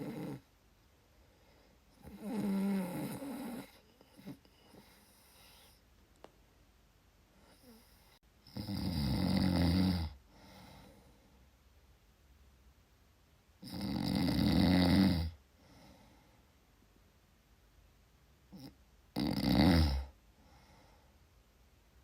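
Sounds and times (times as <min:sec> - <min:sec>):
person snoring: 0:00.0 - 0:00.5, 0:02.0 - 0:05.7, 0:07.5 - 0:11.0, 0:13.6 - 0:15.4, 0:18.5 - 0:20.7.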